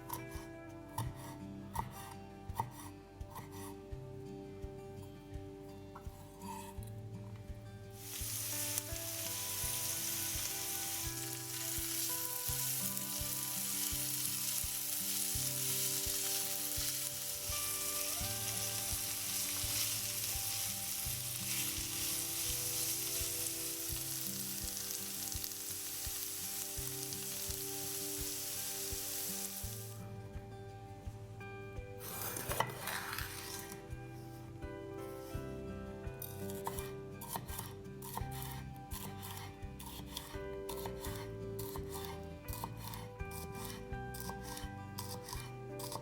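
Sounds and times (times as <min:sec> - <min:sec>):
food sizzling in hot oil: 0:08.0 - 0:30.0.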